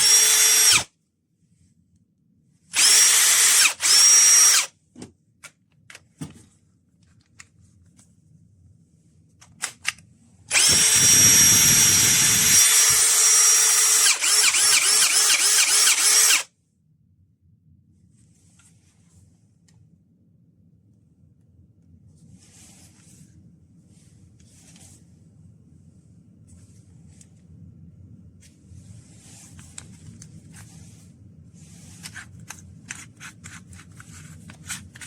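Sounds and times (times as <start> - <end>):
drill motor whine: 0.0 - 0.9, 2.8 - 4.7, 10.5 - 16.5.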